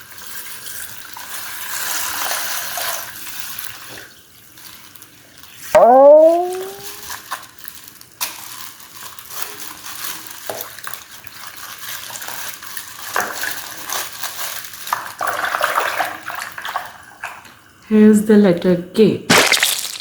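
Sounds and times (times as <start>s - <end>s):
hands squishing slime: 19.3s - 20.0s.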